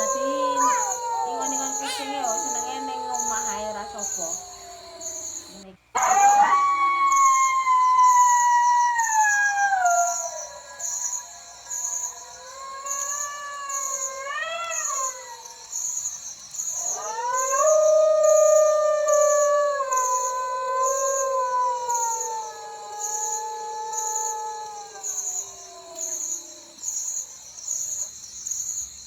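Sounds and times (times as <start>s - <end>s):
dog howling: 0.0s - 15.5s, 16.8s - 26.8s
crickets chirping: 0.0s - 29.0s.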